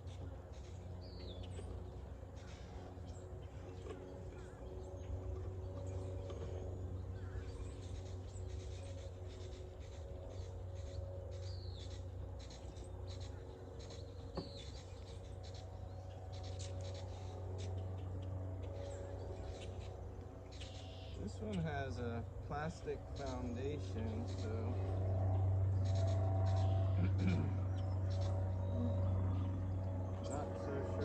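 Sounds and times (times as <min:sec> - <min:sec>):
honeybees humming: 0:00.0 - 0:31.0
bird chirps: 0:00.5 - 0:21.7.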